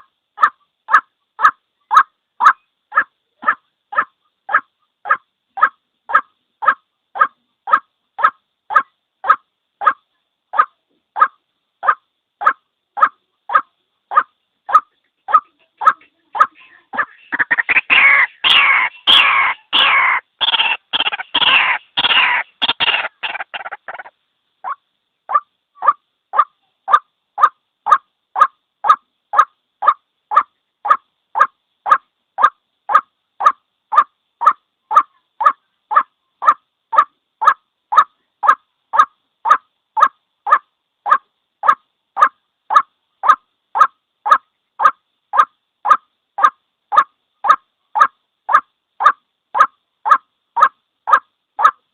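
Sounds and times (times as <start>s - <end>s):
waterhen calling: 0.0s - 51.8s.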